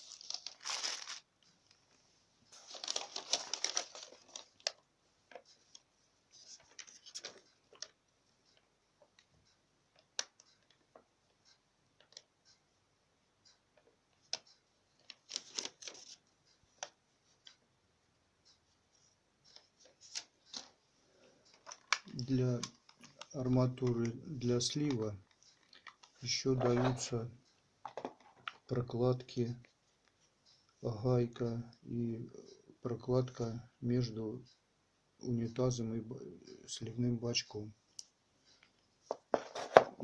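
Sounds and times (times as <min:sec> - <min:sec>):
plastic bags crinkling: 0:00.0 - 0:01.3, 0:02.6 - 0:04.8, 0:21.5 - 0:23.4.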